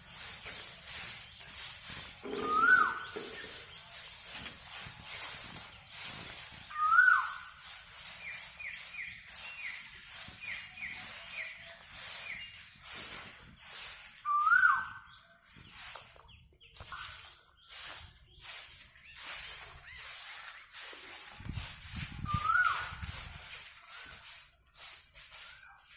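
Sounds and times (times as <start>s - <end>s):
quick falling bird notes: 2.2s - 3.7s
bird call rising then dropping: 2.3s - 3.1s.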